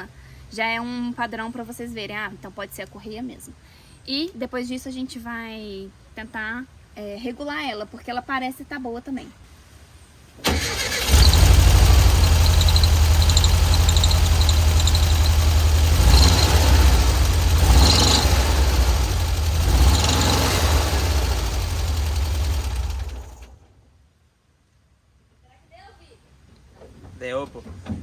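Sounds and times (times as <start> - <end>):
van engine idling: 10.5 - 23.6
drive belt chirping squeal: 11.0 - 19.0.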